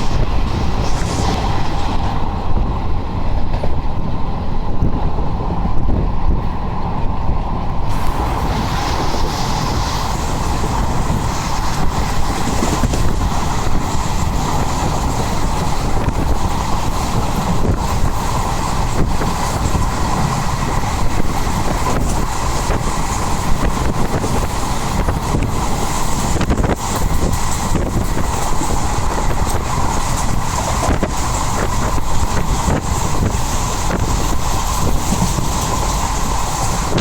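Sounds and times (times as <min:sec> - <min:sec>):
train rumbling: 0:00.0 - 0:37.0
wheels clattering on rails: 0:00.0 - 0:37.0.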